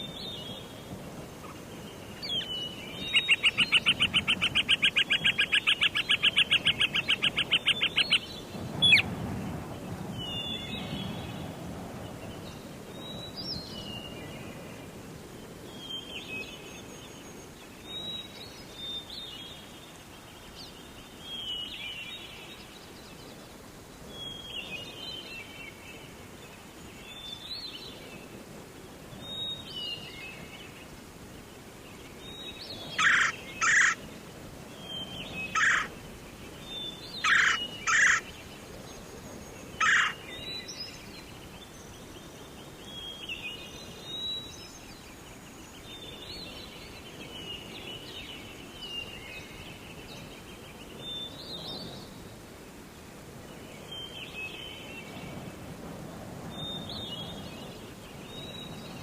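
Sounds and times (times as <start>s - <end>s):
birds singing: 0.0s - 11.5s, 29.2s - 52.3s
loud harsh bird calls: 33.0s - 34.0s, 35.5s - 36.0s, 37.2s - 38.3s, 39.8s - 40.2s.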